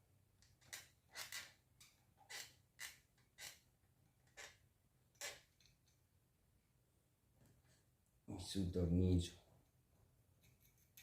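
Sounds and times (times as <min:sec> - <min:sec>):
small parts rustling and clicking: 0:00.4 - 0:06.0, 0:10.4 - 0:11.0.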